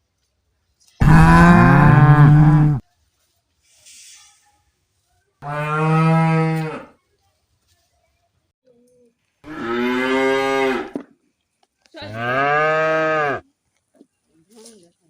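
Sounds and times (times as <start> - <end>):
cow mooing: 1.0 - 2.8, 12.1 - 13.4.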